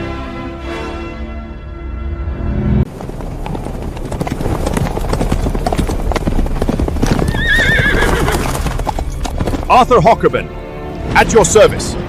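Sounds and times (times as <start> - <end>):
music: 0.0 - 2.9, 7.8 - 12.0
horses galloping: 2.9 - 10.2
horse neighing: 7.0 - 9.4.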